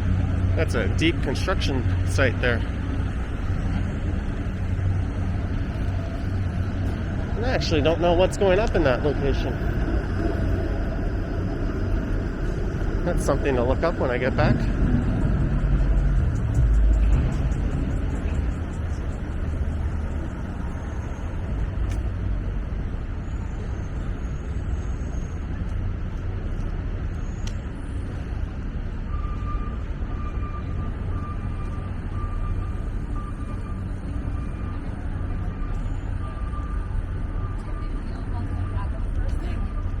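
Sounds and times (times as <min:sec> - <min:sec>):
vehicle passing: 0:00.0 - 0:21.8
street traffic rumble: 0:00.0 - 0:40.0
reversing alarm beeping: 0:28.4 - 0:40.0.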